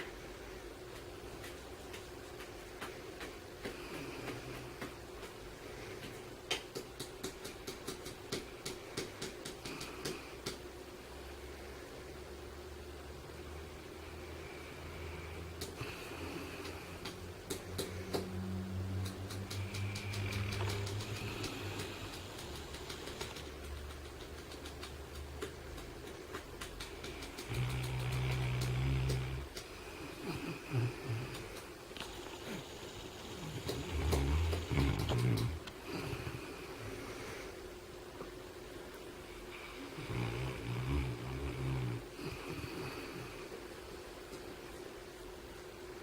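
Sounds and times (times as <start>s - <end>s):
dog snoring: 14.0s - 23.9s, 26.9s - 37.5s, 39.5s - 43.6s.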